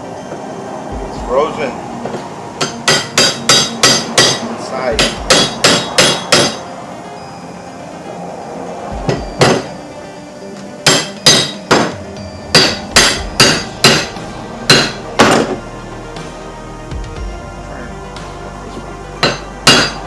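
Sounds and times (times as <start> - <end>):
hammer blows ringing on metal: 1.0 - 6.7, 9.0 - 9.9, 10.8 - 15.7, 19.2 - 20.0.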